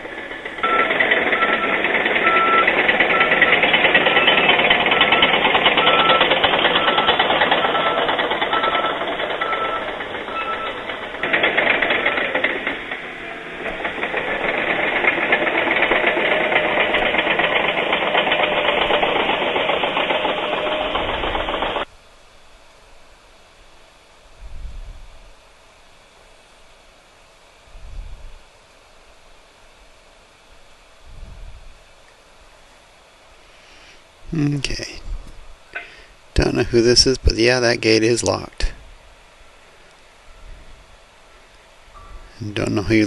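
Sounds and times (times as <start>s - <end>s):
diesel machine clattering: 0.0s - 21.9s, 35.8s - 38.8s, 42.0s - 43.0s
reversing alarm beeping: 0.2s - 21.8s.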